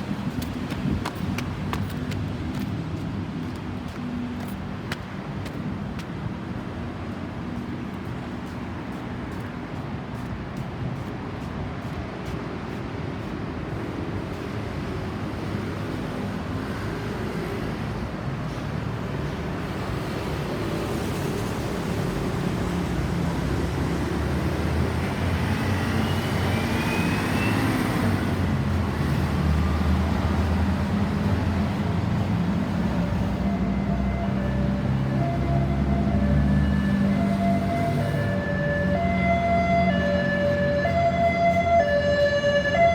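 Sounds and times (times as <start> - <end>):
road traffic: 0.0 - 42.9
vehicle approaching: 23.4 - 42.9.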